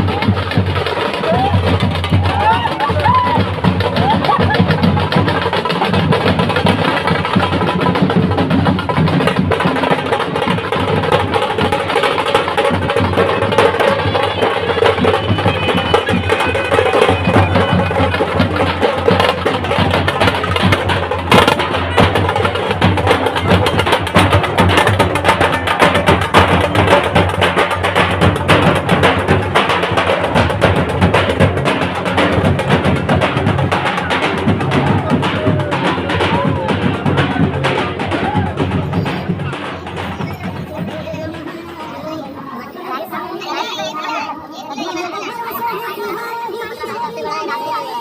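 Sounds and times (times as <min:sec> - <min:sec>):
dhol drums beating fast rhythm: 0:00.0 - 0:48.0
shehnai wavering melody: 0:13.4 - 0:18.6.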